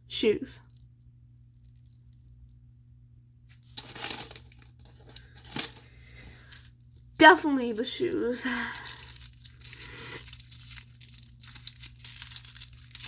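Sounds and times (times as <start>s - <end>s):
packaging wrapper crinkling and tearing: 3.5s - 7.0s, 8.5s - 13.0s.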